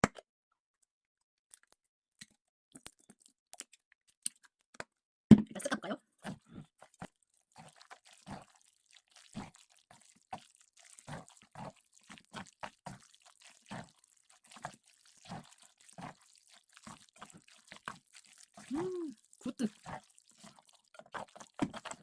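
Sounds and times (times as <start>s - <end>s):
person gulping a drink: 5.6s - 22.0s.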